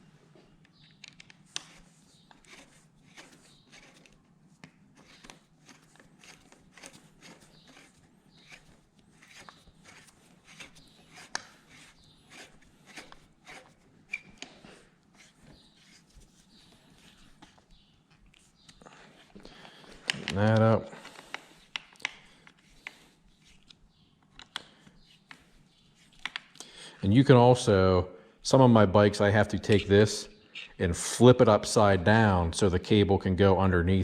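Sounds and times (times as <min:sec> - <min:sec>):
hand tools clicking and tapping: 0:02.4 - 0:14.6.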